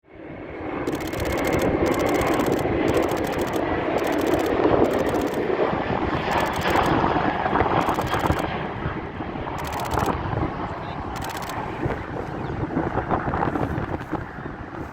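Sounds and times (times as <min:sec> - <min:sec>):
jet engines of passing airliner: 0:00.0 - 0:14.9
wind rumbling on microphone: 0:00.3 - 0:14.9
camera shutter clicks: 0:00.9 - 0:05.5, 0:06.3 - 0:07.0, 0:07.8 - 0:08.5, 0:09.6 - 0:10.2, 0:11.2 - 0:11.6.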